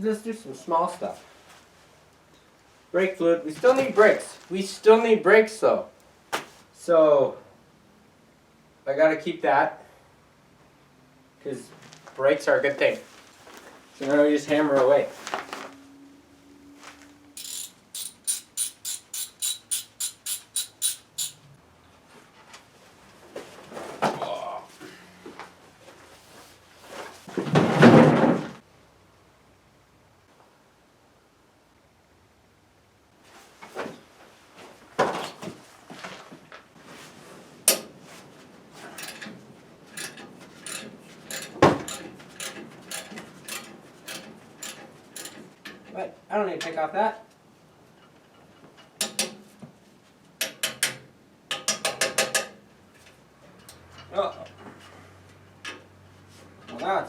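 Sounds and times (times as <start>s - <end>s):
hand tools knocking on metal parts: 17.4s - 21.4s, 39.9s - 45.8s, 50.4s - 52.6s
ratchet wrench clicking: 17.4s - 21.5s, 40.0s - 45.4s.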